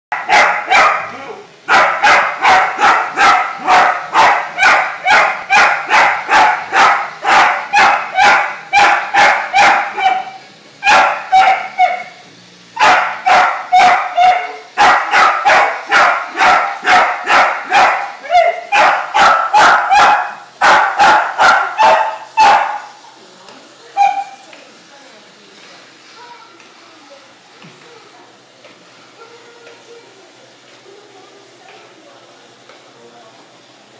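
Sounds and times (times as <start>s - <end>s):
dog barking rapidly: 0.1s - 1.1s, 1.7s - 12.2s, 12.8s - 22.9s.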